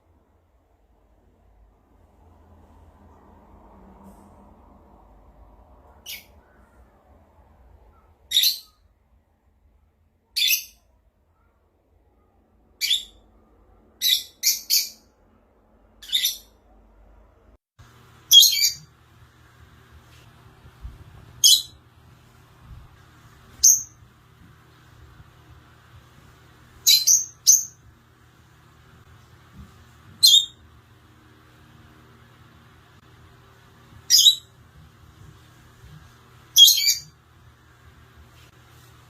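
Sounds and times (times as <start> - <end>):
faint low hum: 0.0 - 39.0
parrot calling: 16.0 - 16.6, 18.3 - 18.9, 21.4 - 21.8, 23.6 - 24.0, 26.8 - 27.8, 30.2 - 30.6, 34.0 - 34.5, 36.6 - 37.2.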